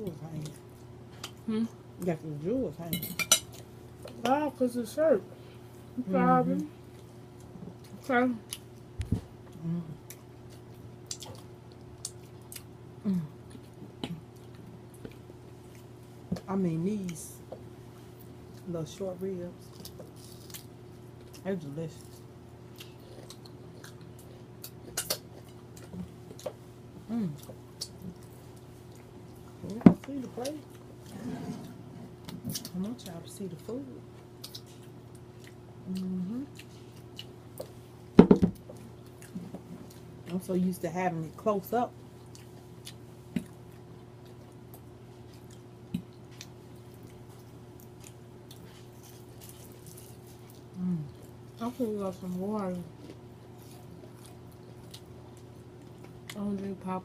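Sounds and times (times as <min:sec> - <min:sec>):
closed-mouth hum: 0:04.0 - 0:10.2, 0:11.0 - 0:15.2, 0:24.2 - 0:28.8, 0:29.5 - 0:40.5, 0:50.6 - 0:53.5.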